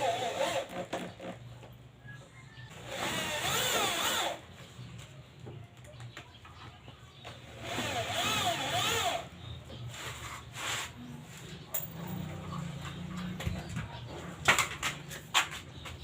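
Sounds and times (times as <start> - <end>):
cordless drill driving screws: 0.0 - 1.4, 2.7 - 4.4, 7.4 - 9.3.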